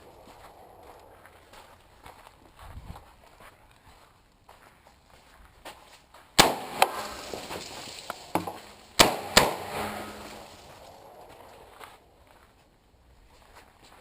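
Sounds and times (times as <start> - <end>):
rifle shots with echo: 6.4 - 7.3, 8.8 - 10.7.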